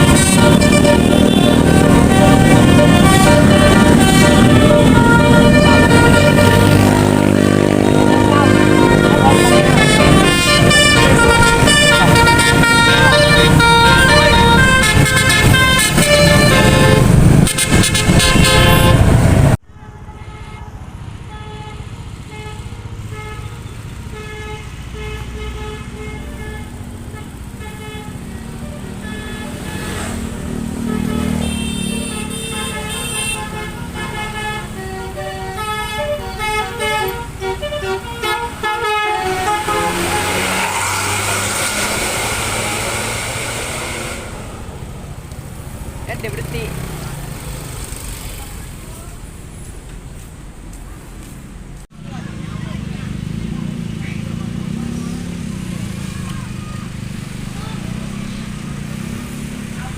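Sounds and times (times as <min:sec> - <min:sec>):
bus engine running: 0:00.0 - 0:19.6, 0:21.0 - 0:59.9
musical bus horn: 0:00.0 - 0:44.8.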